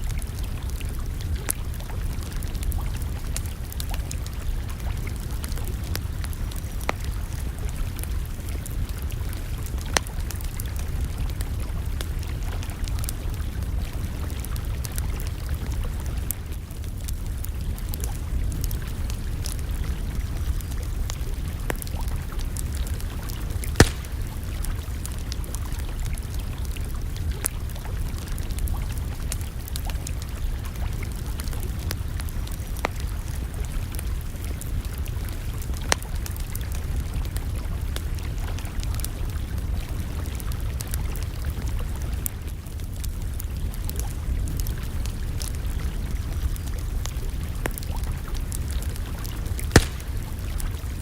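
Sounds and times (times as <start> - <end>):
campfire crackling and popping: 0.0 - 51.0.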